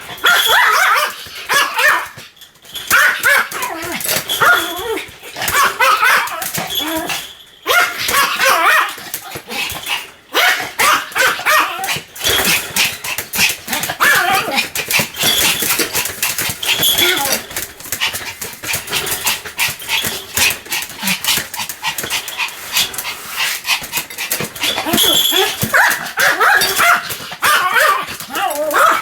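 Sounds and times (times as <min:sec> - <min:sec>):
small dog barking: 0:00.2 - 0:02.2, 0:02.9 - 0:04.9, 0:05.5 - 0:06.8, 0:07.7 - 0:09.0, 0:10.3 - 0:11.9, 0:13.7 - 0:14.6, 0:24.9 - 0:29.0.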